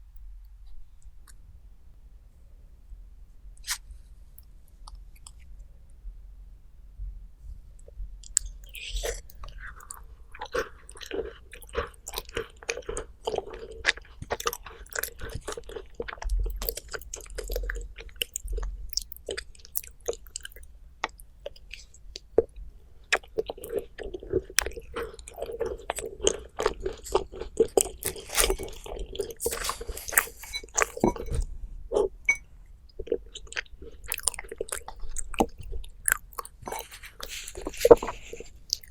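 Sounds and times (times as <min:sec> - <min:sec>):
chewing and crunching food: 0:07.9 - 0:38.9.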